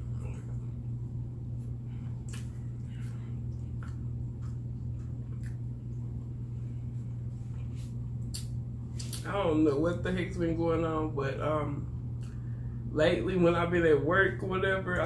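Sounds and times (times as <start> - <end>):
person chewing food: 0.0 - 9.2
steady low hum: 0.0 - 15.0
mouth clicks and smacks: 2.2 - 5.7, 8.2 - 9.3.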